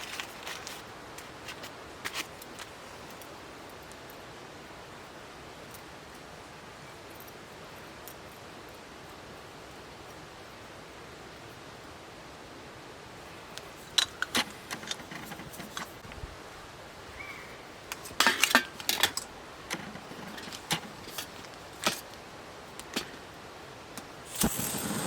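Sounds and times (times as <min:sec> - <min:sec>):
metal cook gear clinking: 0:13.8 - 0:15.9, 0:17.9 - 0:22.1.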